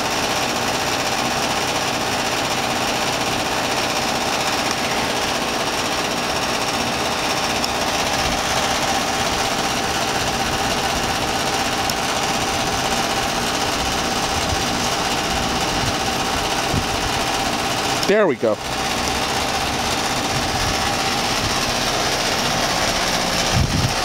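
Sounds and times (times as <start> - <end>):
heat pump unit humming: 0.0 - 24.0.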